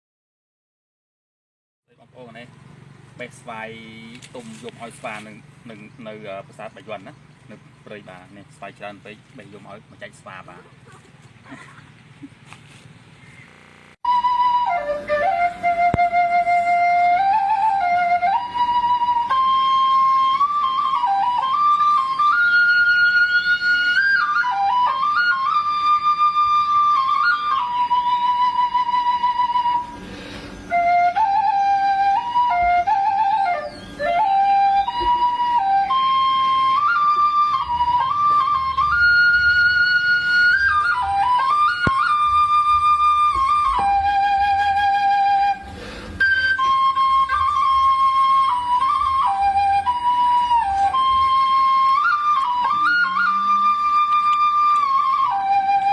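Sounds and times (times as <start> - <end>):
solo flute melody: 14.0 - 55.9.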